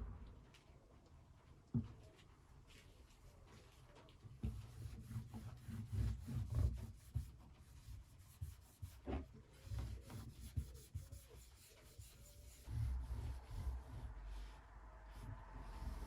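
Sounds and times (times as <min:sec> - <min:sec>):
hands rubbing wood: 0:04.5 - 0:16.0.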